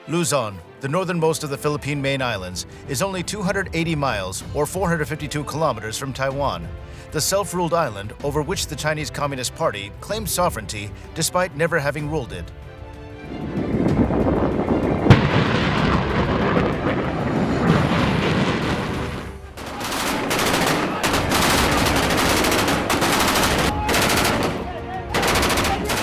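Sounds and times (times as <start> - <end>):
heavy blasting: 12.9 - 26.0
automatic gunfire bursts: 19.7 - 24.6, 25.2 - 26.0.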